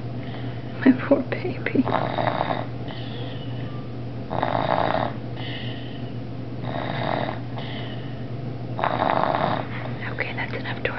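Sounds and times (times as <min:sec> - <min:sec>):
child snoring: 0:01.8 - 0:08.2, 0:08.8 - 0:09.7.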